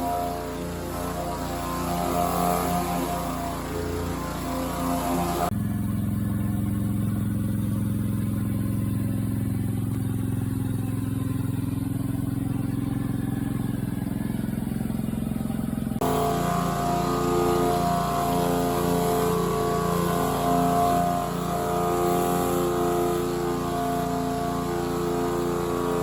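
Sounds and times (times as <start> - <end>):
pressure washer engine running: 0.0 - 26.0
pressure washer spray hiss: 16.0 - 26.0.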